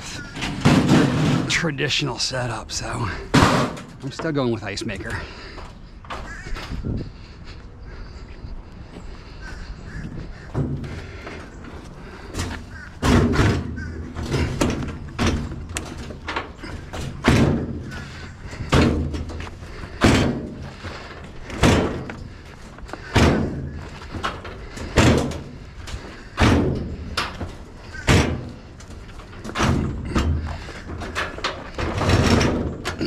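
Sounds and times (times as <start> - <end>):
sheet-metal appliances banging: 0.2 - 1.7, 12.4 - 22.4, 23.0 - 33.0.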